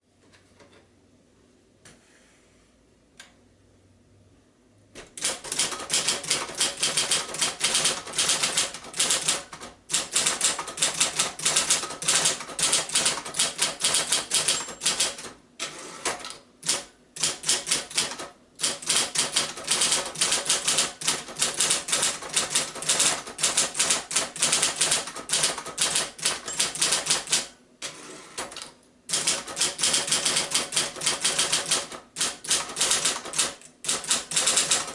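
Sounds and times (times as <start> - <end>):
click: 3.2 - 3.4
electric typewriter typing: 5.0 - 34.9.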